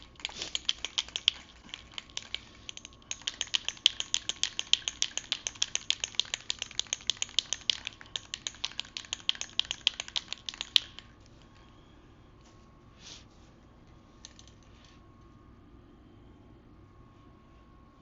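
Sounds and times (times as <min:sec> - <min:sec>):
spray can shaking: 0:00.0 - 0:11.4.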